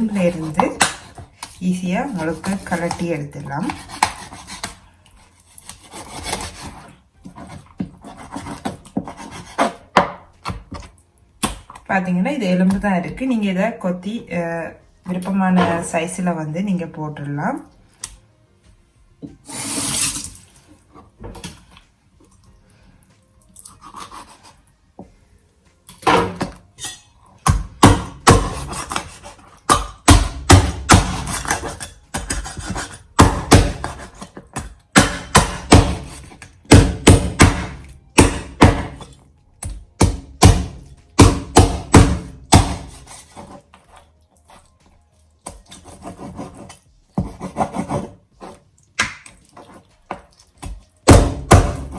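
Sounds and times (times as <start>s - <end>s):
knife chopping bones: 0.0s - 4.8s, 5.6s - 11.8s, 26.0s - 26.6s, 27.4s - 43.6s, 49.0s - 49.4s, 50.1s - 51.9s.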